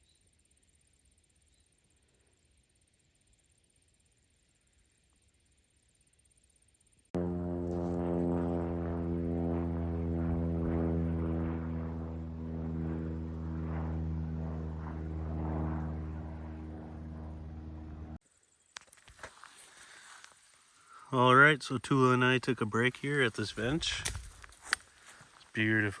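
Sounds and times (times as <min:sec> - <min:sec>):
propeller airplane drone: 0:06.3 - 0:18.2.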